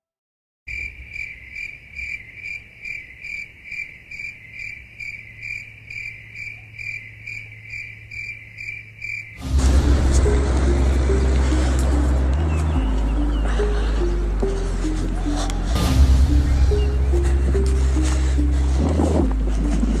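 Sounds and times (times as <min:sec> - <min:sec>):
cricket chirping: 0:00.7 - 0:09.6.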